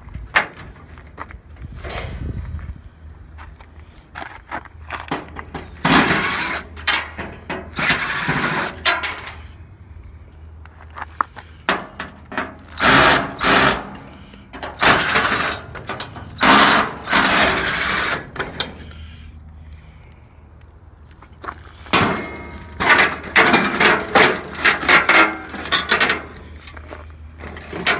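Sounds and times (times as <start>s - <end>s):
sharp metal clicks and knocks: 11.7s - 19.0s, 21.9s - 27.9s.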